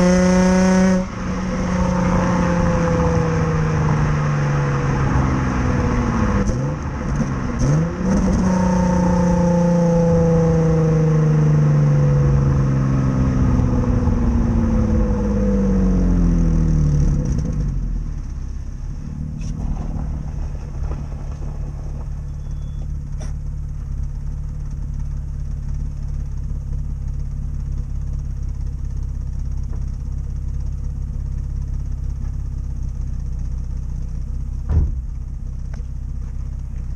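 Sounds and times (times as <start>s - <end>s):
car engine revs dropping to idle: 0.0s - 36.9s.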